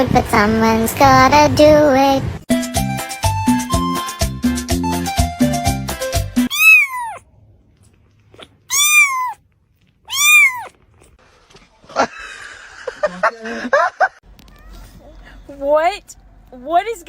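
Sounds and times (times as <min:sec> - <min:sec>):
cat meowing: 0:06.5 - 0:07.2, 0:08.4 - 0:09.4, 0:10.0 - 0:10.8
rustling: 0:06.5 - 0:11.7.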